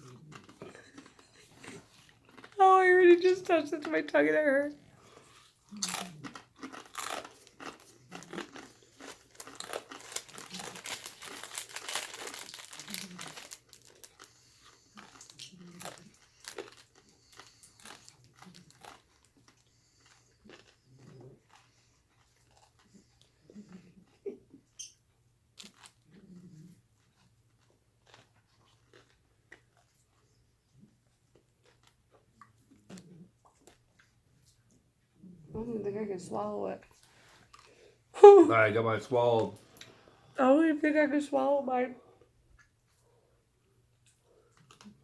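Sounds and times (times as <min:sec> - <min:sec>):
chip crunching while chewed: 0:00.0 - 0:02.6, 0:05.0 - 0:34.6, 0:37.0 - 0:37.8, 0:44.0 - 0:45.0.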